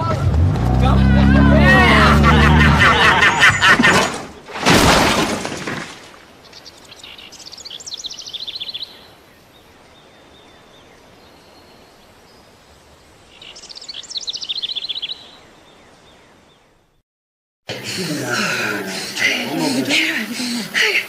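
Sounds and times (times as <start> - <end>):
faint outdoor ambience: 0.0 - 4.8, 5.6 - 17.0, 17.7 - 21.0
songbird trilling: 6.4 - 9.2, 13.3 - 15.4.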